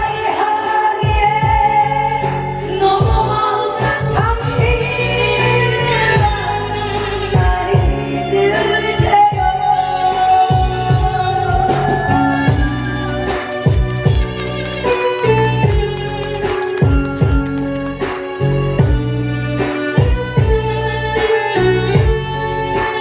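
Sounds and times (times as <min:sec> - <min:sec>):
karaoke backing track: 0:00.0 - 0:23.0
kick drum beat: 0:13.6 - 0:14.6, 0:15.3 - 0:17.7.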